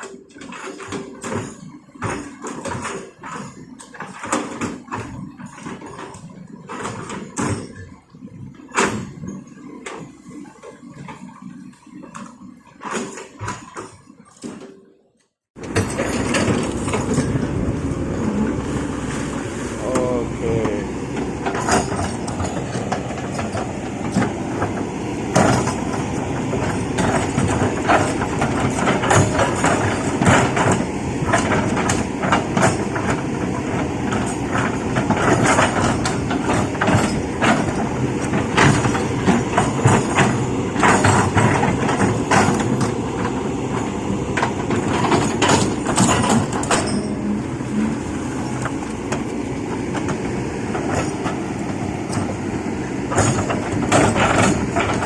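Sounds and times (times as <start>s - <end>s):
excavator diesel engine running: 0.0s - 14.7s, 15.6s - 55.0s
stones and steel bucket clanking: 21.4s - 33.2s.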